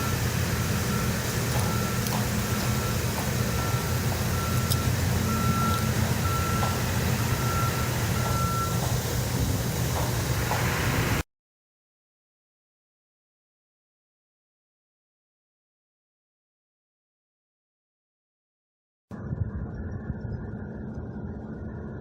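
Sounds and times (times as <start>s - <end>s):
reversing alarm beeping: 0.0s - 10.2s
truck engine idling: 0.0s - 11.2s.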